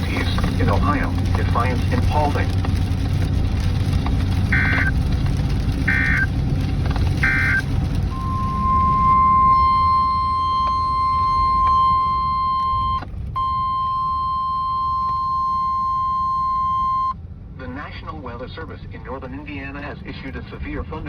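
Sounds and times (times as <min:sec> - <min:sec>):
low vehicle rumble: 0:00.0 - 0:21.0
steady warning tone: 0:04.5 - 0:05.0, 0:05.9 - 0:06.3, 0:07.2 - 0:17.2
warbling data bursts: 0:04.5 - 0:05.0, 0:05.9 - 0:06.3, 0:07.2 - 0:17.1.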